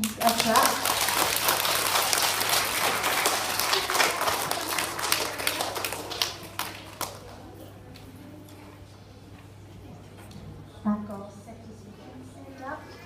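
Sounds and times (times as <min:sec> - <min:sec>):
audience applauding: 0:00.0 - 0:07.4.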